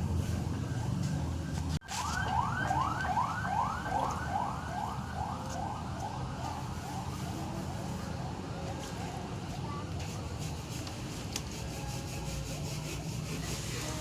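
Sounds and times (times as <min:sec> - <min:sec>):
siren wailing: 0:01.8 - 0:07.3.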